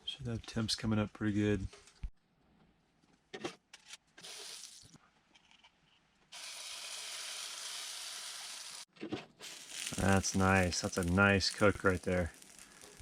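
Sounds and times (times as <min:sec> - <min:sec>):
pancake sizzling in a skillet: 0:06.4 - 0:13.0.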